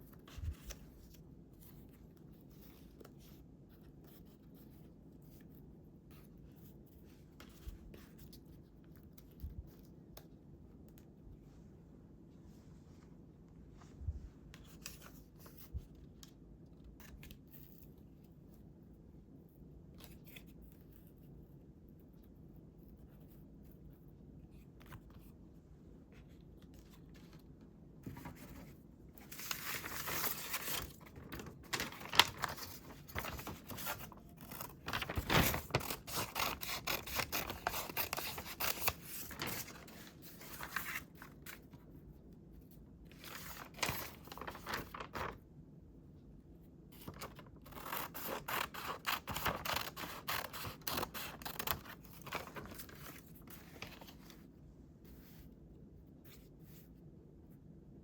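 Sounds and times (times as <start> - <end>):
scissors cutting paper: 31.7 - 39.7, 47.3 - 52.6.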